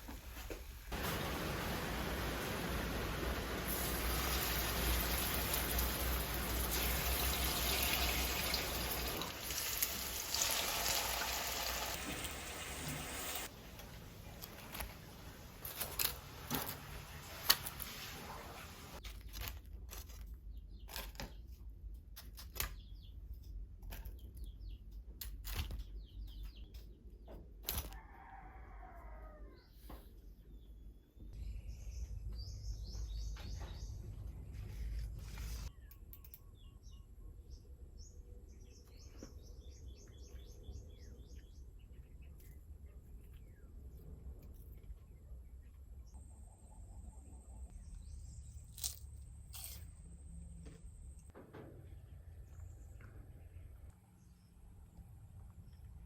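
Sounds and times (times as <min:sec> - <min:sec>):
water pouring: 0:00.9 - 0:13.5.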